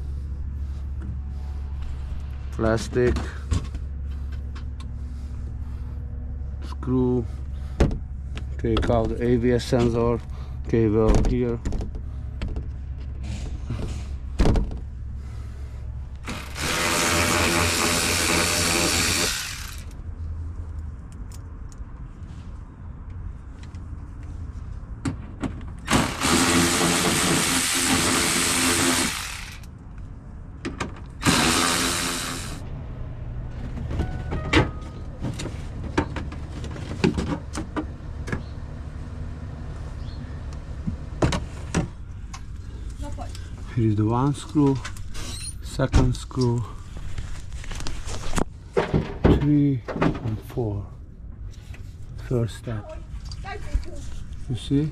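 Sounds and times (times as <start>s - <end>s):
power tool running: 16.2s - 20.0s, 25.8s - 29.7s, 31.2s - 32.7s.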